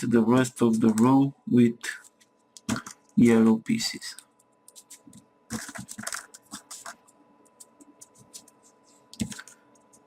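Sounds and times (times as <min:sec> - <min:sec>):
paper clicks and scratches: 0:01.9 - 0:03.2, 0:04.7 - 0:10.0.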